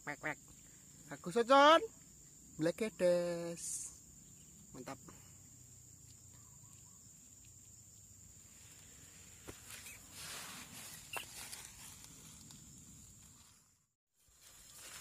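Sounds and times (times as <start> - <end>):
rustling: 8.4 - 15.0.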